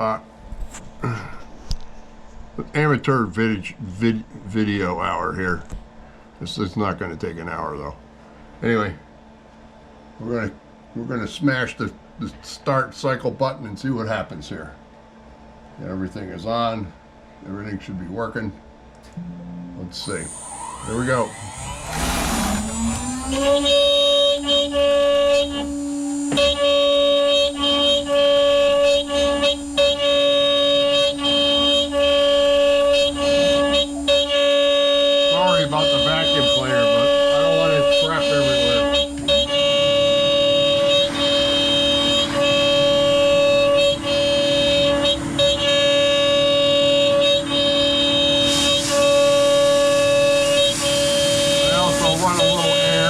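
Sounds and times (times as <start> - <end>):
stepper motors whining: 19.0 - 53.0
vacuum cleaner running: 19.1 - 53.0
router spindle cutting wood: 20.0 - 53.0.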